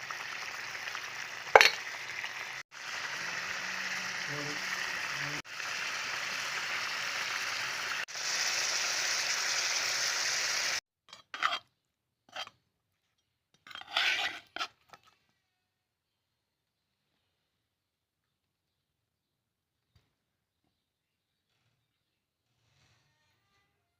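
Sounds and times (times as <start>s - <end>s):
chicken sizzling in a pan: 0.0s - 10.8s
kitchen utensils scraping and clattering: 1.5s - 2.2s, 13.6s - 15.2s.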